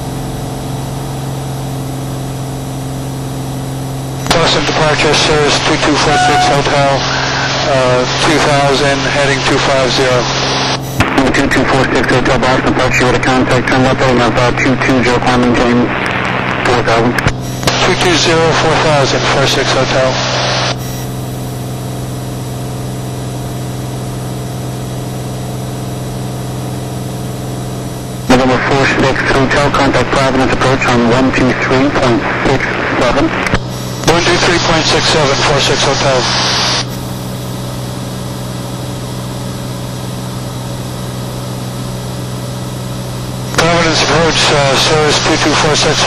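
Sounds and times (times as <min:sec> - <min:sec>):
aircraft engine and propeller drone: 0:00.0 - 0:46.0.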